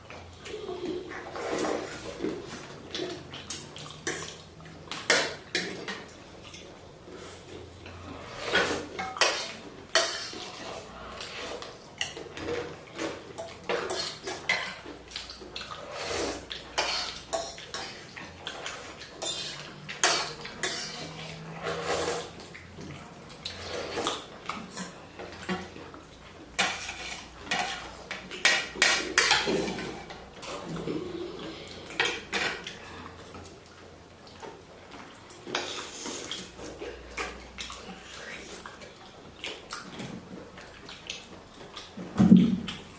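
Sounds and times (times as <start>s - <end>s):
cutlery clinking against bowls: 1.6s - 6.7s, 7.8s - 33.5s.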